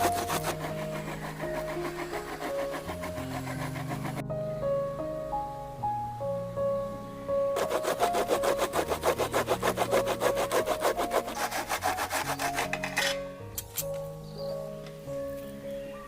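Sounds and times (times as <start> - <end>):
fast scraping strokes: 0.0 - 4.2, 7.6 - 13.2
background music with piano: 0.0 - 16.0.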